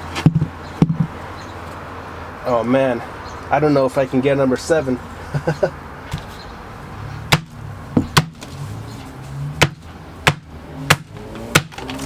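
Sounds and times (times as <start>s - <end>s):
sledgehammer striking paper: 9.6s - 12.0s.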